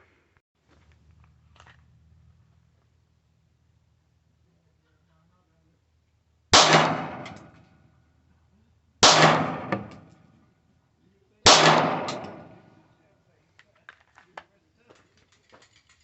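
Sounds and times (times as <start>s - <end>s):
pistol shots ringing: 6.6s - 7.6s, 9.0s - 10.1s, 11.5s - 12.7s.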